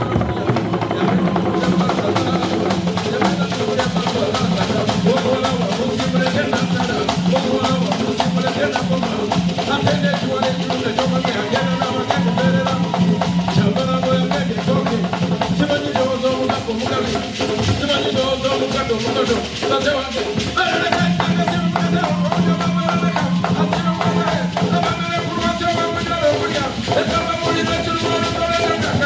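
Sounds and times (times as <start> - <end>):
tuned drums playing fast rhythm: 0.0 - 29.0.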